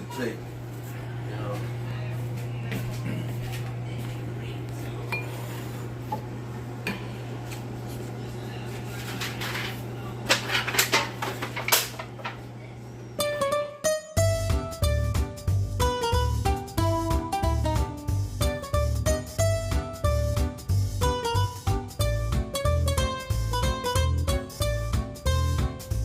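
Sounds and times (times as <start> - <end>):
steady low hum: 0.0 - 13.3
pans and utensils clattering: 9.0 - 12.4
plucked guitar music: 13.2 - 26.0.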